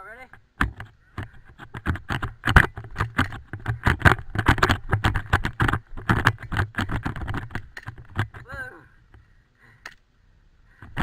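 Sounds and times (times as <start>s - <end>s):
clatter of knocks and rustles: 0.6s - 8.5s.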